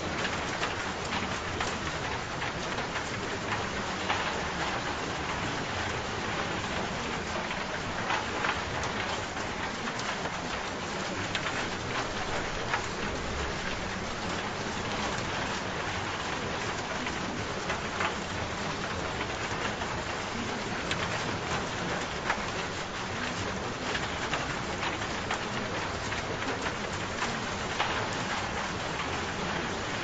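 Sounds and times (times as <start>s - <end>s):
raindrops ticking on a surface: 0.0s - 30.0s
steady rain falling: 0.0s - 30.0s.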